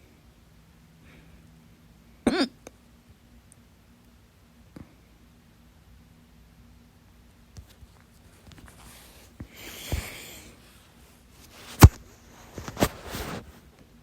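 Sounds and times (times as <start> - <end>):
person hiccuping: 2.3 - 2.7.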